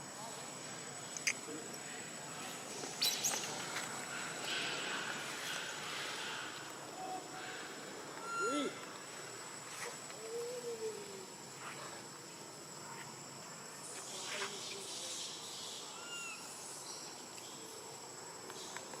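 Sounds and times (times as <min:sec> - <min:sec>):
high-pitched insect drone: 0:03.0 - 0:12.1.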